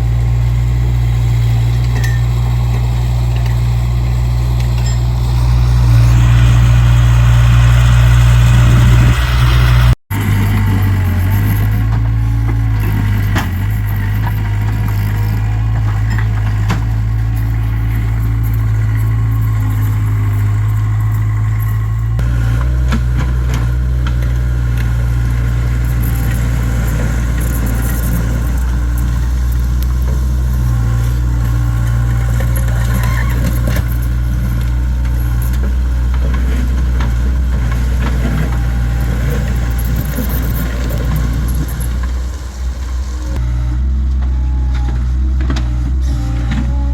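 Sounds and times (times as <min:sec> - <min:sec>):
diesel engine running: 0:00.0 - 0:46.9
metallic rattles and clanks: 0:10.1 - 0:46.9.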